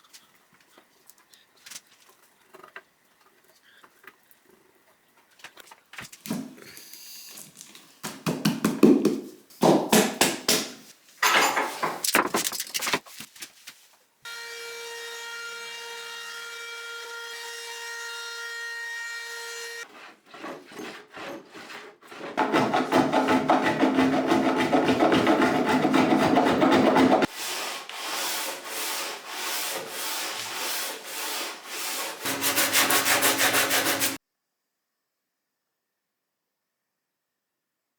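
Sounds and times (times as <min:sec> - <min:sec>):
sawing strokes on wood: 0:14.4 - 0:34.2
loud cutting or sanding noise: 0:23.2 - 0:34.2.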